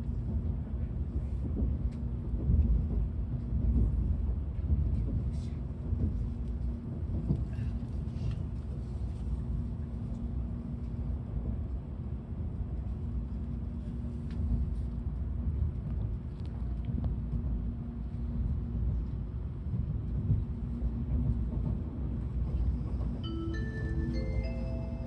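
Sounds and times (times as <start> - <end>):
train cabin rumble: 0.0 - 25.0.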